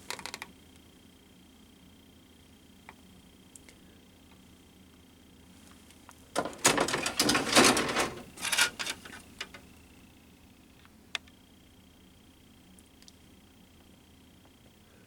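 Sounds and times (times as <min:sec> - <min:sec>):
plastic crackling and rattling: 0:06.4 - 0:09.6.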